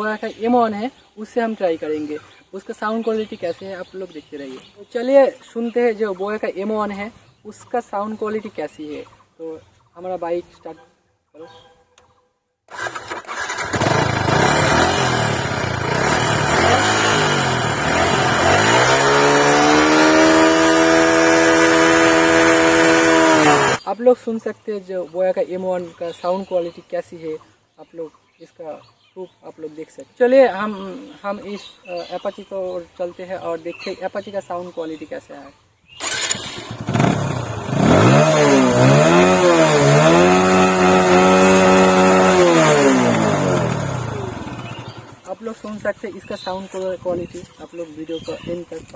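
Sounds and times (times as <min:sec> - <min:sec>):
motorcycle engine starting and revving: 0:12.6 - 0:23.9, 0:35.9 - 0:47.4.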